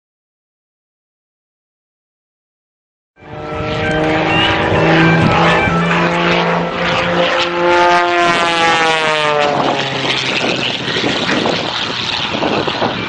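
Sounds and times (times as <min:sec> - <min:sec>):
aircraft engine flying past: 0:03.2 - 0:13.0.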